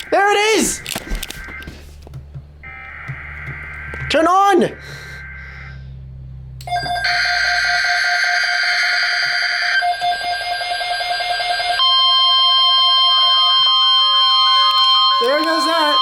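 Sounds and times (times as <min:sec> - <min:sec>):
stepped beeping: 0:00.0 - 0:04.4, 0:11.4 - 0:16.0
steady high alert tone: 0:06.6 - 0:16.0.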